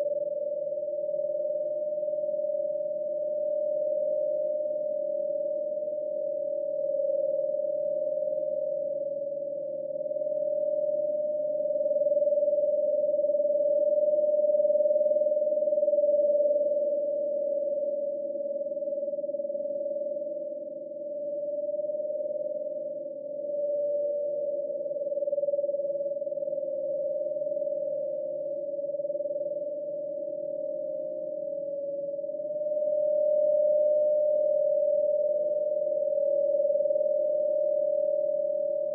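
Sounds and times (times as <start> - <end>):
synthesized humming tone: 0.0 - 38.9.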